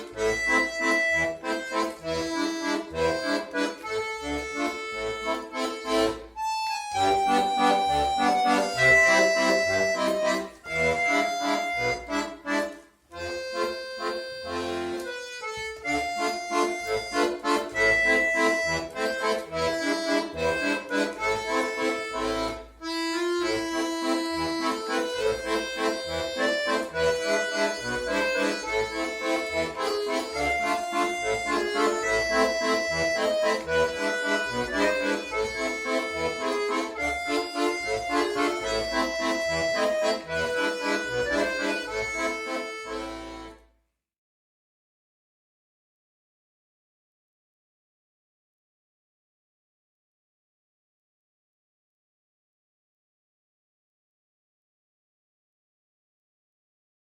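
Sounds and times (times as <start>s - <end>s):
accordion playing a tune: 0.0s - 43.8s.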